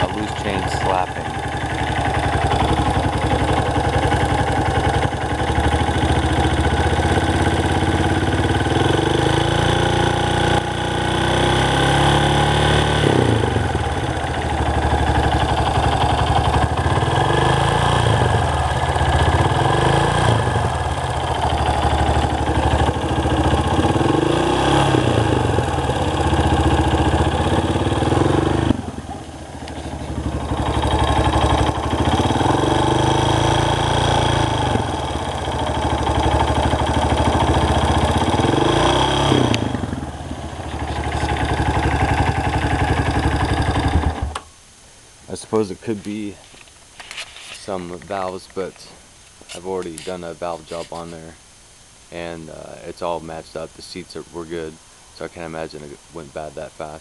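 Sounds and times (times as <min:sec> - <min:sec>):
engine ticking noise: 0:00.0 - 0:09.4
engine running: 0:00.0 - 0:44.5.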